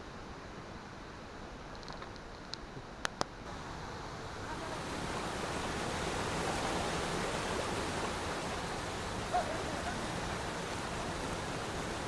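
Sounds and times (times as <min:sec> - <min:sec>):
waterfall rushing: 0:03.5 - 0:12.0.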